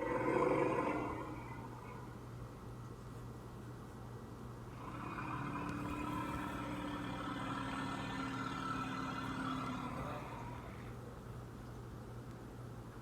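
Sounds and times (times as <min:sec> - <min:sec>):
low animal call: 0:00.0 - 0:02.1, 0:04.8 - 0:11.0
low steady hum: 0:00.0 - 0:13.0.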